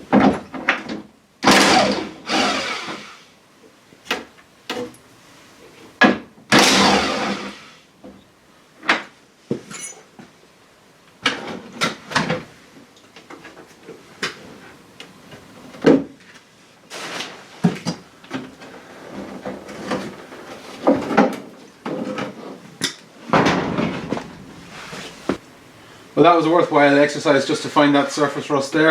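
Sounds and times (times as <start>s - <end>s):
hand tools and metal parts clattering: 9.5s - 10.3s.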